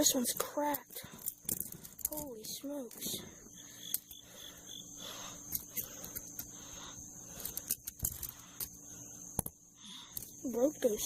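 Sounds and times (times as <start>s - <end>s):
insects chirping: 0.0s - 11.0s.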